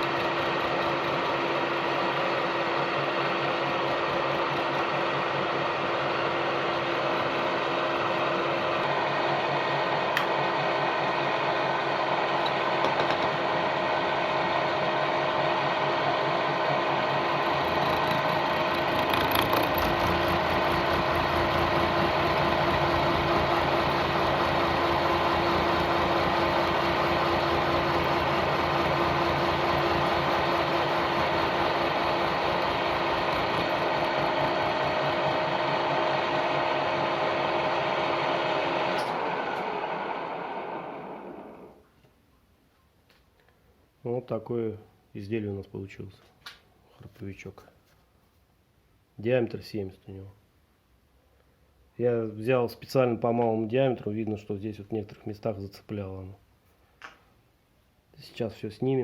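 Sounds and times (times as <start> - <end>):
machine tool cutting metal: 0.0 - 2.1, 17.2 - 35.4
heavier deeper machine sound: 16.5 - 37.7.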